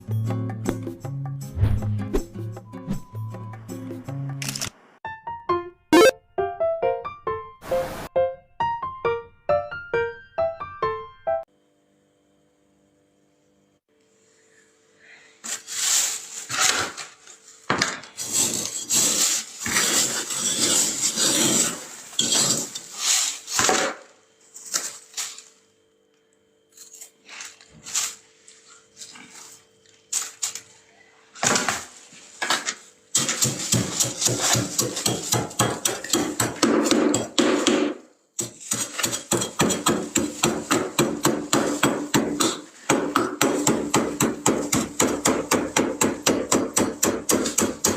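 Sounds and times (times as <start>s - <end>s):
frost scraped off freezer: 15.4s - 17.6s, 18.2s - 24.0s.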